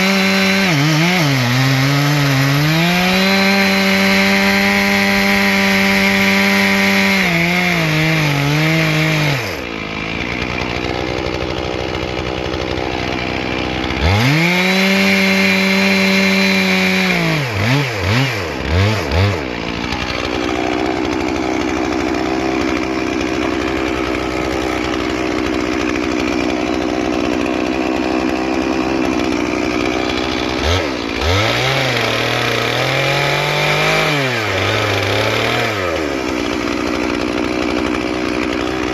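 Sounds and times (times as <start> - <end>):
chainsaw cutting logs: 0.0 - 38.9.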